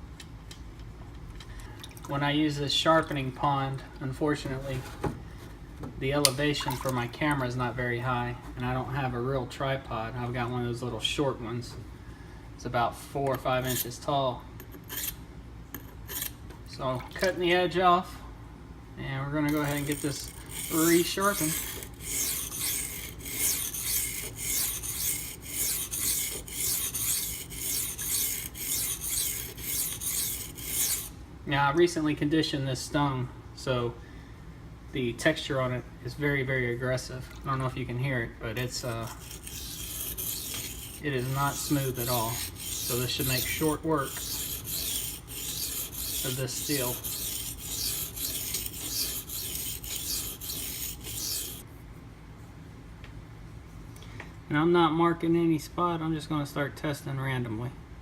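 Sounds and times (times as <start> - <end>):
knife scraping on sharpening stone: 13.3 - 14.0, 14.7 - 15.2, 15.8 - 16.4, 19.5 - 31.1, 38.6 - 51.6.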